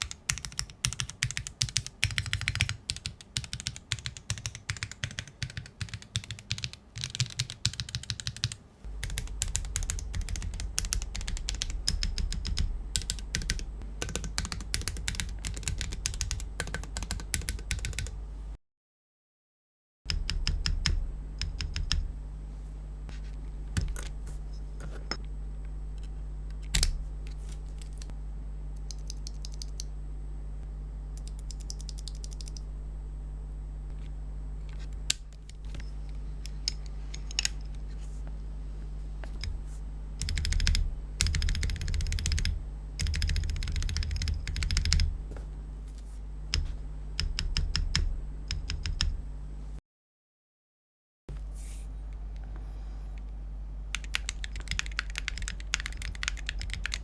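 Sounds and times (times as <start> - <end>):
mechanical keyboard keystrokes: 0.0 - 18.1, 40.2 - 45.1, 53.9 - 57.0
steady low hum: 0.0 - 18.6, 20.1 - 49.8, 51.3 - 57.0.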